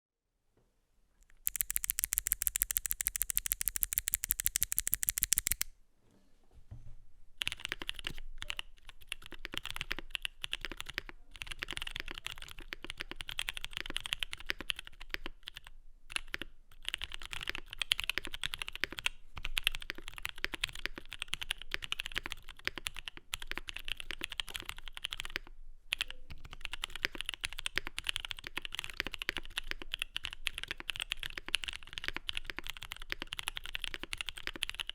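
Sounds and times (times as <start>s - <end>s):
mechanical keyboard typing: 1.2s - 5.7s, 7.4s - 34.9s.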